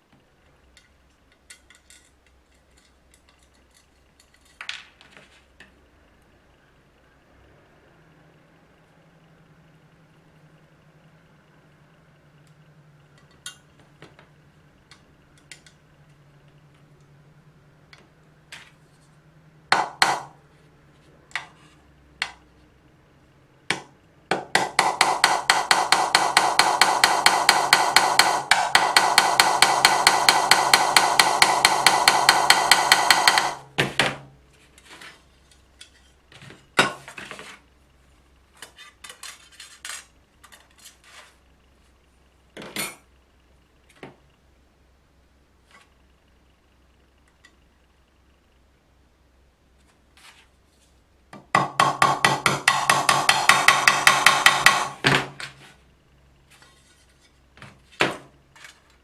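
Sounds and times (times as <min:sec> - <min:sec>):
metal parts clinking: 0:00.8 - 0:05.2
machine clattering rhythmically: 0:24.5 - 0:33.7.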